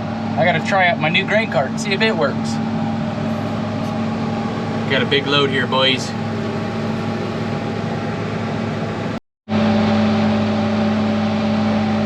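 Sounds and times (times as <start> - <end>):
tractor engine droning: 0.0 - 12.0.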